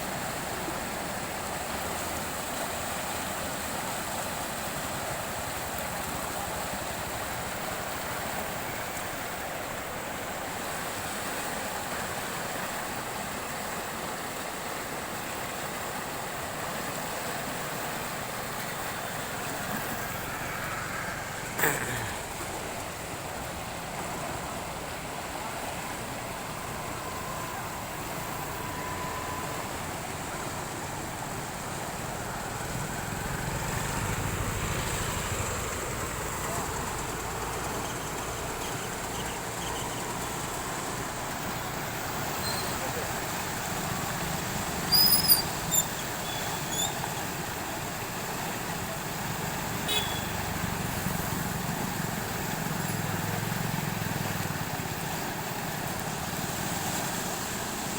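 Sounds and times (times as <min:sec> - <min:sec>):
heavy rain pouring: 0:00.1 - 0:57.9
vehicle engine rumbling: 0:15.6 - 0:57.9.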